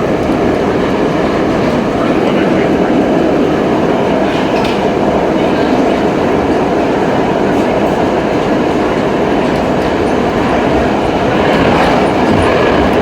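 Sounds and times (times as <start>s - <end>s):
subway train rumbling on track: 0.0s - 13.0s.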